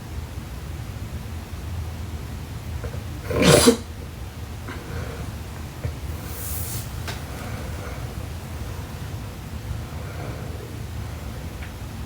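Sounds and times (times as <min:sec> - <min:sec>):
steady low hum: 0:00.0 - 0:12.0
woman breathing softly: 0:04.7 - 0:11.7.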